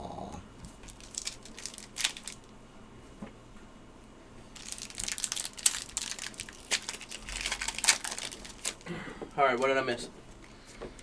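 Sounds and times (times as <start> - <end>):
foil wrapper crinkling and tearing: 0.7 - 2.5, 4.6 - 9.8.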